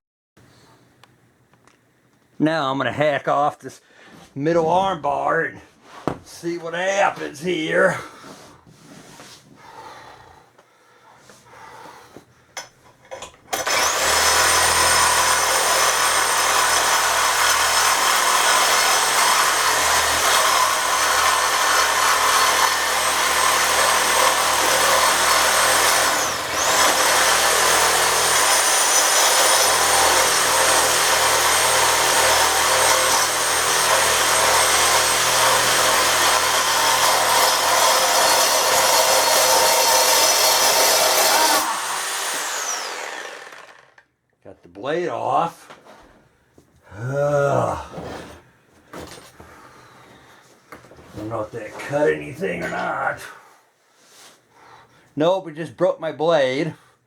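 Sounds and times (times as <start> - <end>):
power tool motor whining: 13.5 - 44.0.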